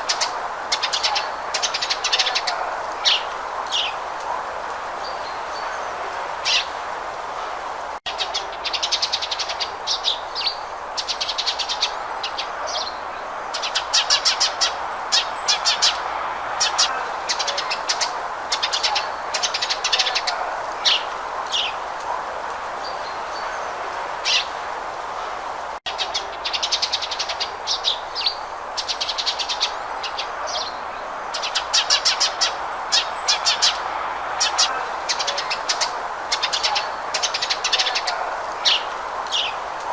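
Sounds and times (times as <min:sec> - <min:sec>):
steady background hiss: 0:00.0 - 0:39.9
sparrow chirping: 0:31.4 - 0:39.6.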